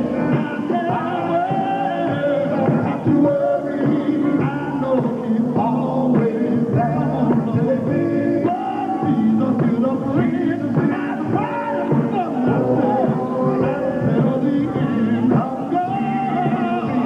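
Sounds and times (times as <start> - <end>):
band playing gospel music: 0.0 - 17.0
men singing: 0.0 - 17.0.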